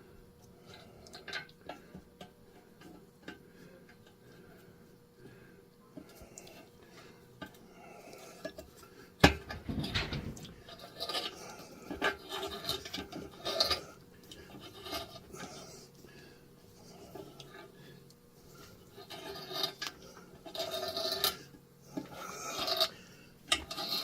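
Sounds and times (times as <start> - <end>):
scraping and rubbing on metal: 9.3 - 15.9, 18.5 - 24.0.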